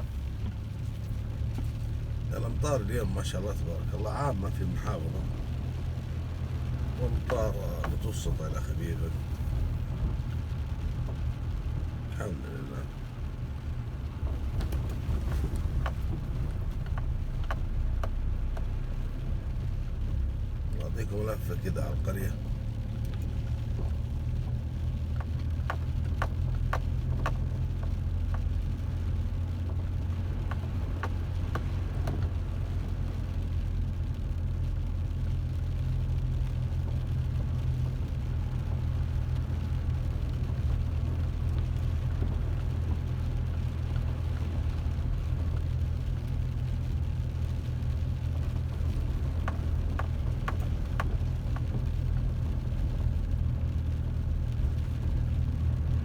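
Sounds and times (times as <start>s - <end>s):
faint clicks: 23.0s - 33.6s, 35.7s - 53.2s.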